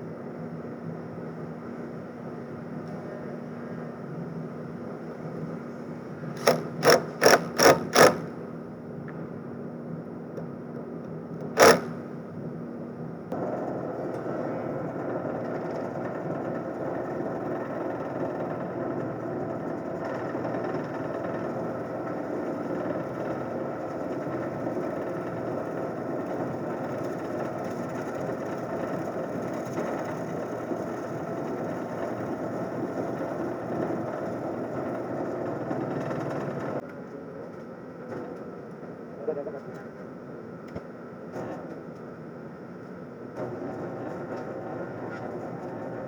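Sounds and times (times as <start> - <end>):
gouge cutting wood on lathe: 6.4 - 8.3, 11.6 - 12.0, 13.4 - 36.8
lathe motor hum: 11.4 - 12.1, 13.3 - 36.8, 43.4 - 46.0.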